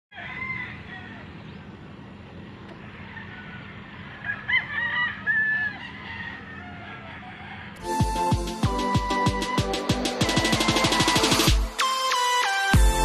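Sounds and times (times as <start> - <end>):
rooster crowing: 0.1 - 1.6, 2.7 - 8.1
low background noise: 0.1 - 7.8.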